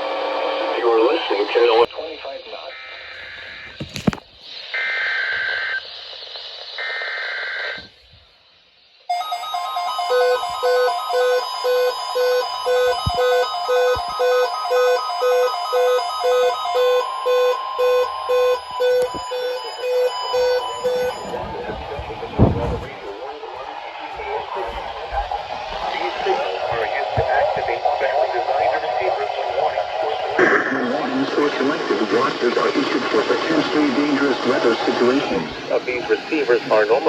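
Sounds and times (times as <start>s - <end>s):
radio static: 0.4s - 8.2s, 10.3s - 37.0s
alert alarm beeping: 9.1s - 22.9s
screechy data bursts: 9.1s - 23.0s
steady warning tone: 9.1s - 37.0s.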